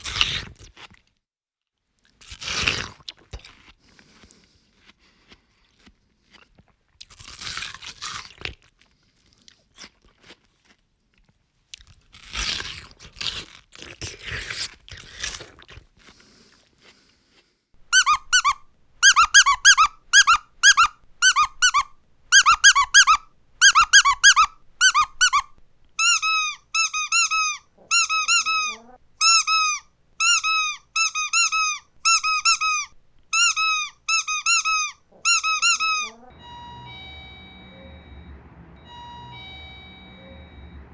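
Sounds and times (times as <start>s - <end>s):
crunchy chewing: 0.0s - 1.2s, 2.0s - 17.6s
squeaky toy squeaking: 17.9s - 40.9s.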